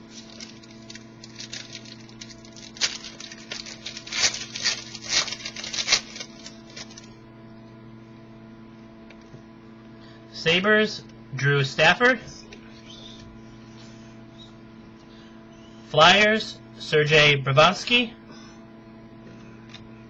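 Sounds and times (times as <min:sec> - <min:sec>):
steady electrical hum: 0:00.0 - 0:20.0
cards clicking and rustling: 0:00.1 - 0:07.1.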